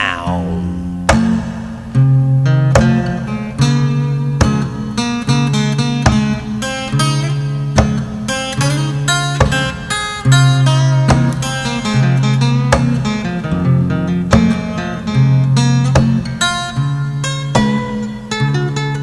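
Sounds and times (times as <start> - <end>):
bass line: 0.0 - 1.0.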